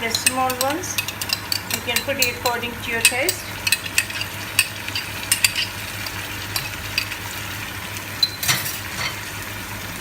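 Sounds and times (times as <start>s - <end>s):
utensil clicking against pan: 0.0s - 7.2s
vegetables sizzling in a pan: 2.4s - 10.0s.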